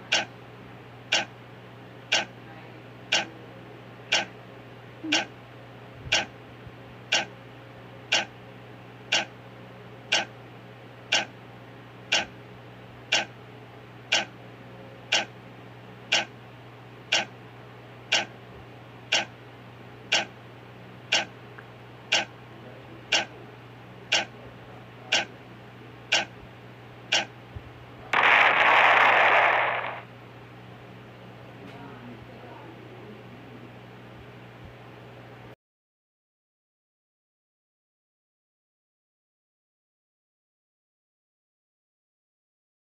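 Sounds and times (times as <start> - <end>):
clock ticking: 0.0 - 0.3, 1.1 - 1.3, 2.1 - 2.3, 4.1 - 4.3, 6.1 - 6.3, 7.1 - 7.3, 8.1 - 8.3, 9.1 - 9.3, 10.1 - 10.3, 11.1 - 11.3, 12.1 - 12.3, 13.1 - 13.3, 14.1 - 14.3, 15.1 - 15.3, 16.1 - 16.3, 17.1 - 17.3, 18.1 - 18.3, 19.1 - 19.3, 20.1 - 20.3, 21.1 - 21.3, 22.1 - 22.3, 23.1 - 23.3, 24.1 - 24.3, 26.1 - 26.3, 27.1 - 27.3.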